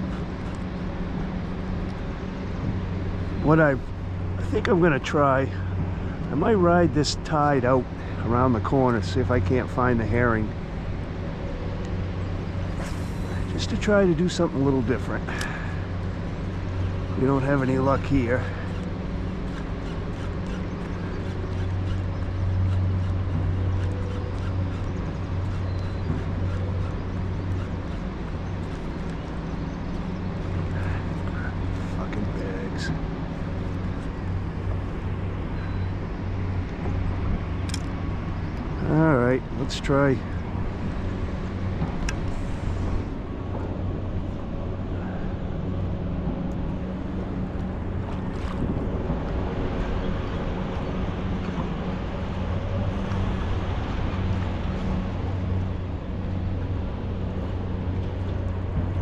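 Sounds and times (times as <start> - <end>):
boat motor humming: 0.0 - 59.0
wind: 0.0 - 59.0
water splashing around hull: 10.5 - 38.8, 40.2 - 59.0.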